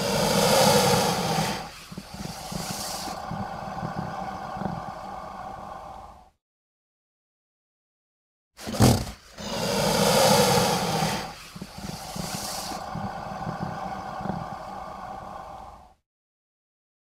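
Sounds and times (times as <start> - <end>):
alligator snort: 0.0 - 6.3, 8.6 - 16.0
alligator hissing breath: 0.0 - 6.4, 9.2 - 16.0.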